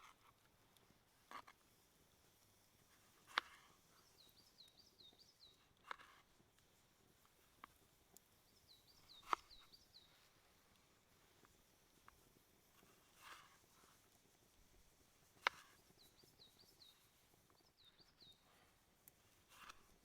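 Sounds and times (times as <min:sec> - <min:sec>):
small songbird singing: 0:03.3 - 0:06.0, 0:08.1 - 0:10.9, 0:15.4 - 0:18.8.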